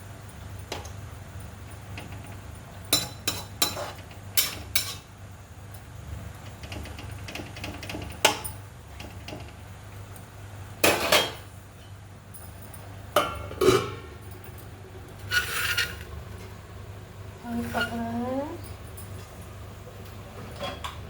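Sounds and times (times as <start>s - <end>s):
steady low hum: 0.0s - 21.0s
metal utensils and pots clanking: 2.0s - 5.1s, 10.8s - 11.9s, 13.2s - 16.1s, 17.5s - 19.2s, 20.4s - 21.0s.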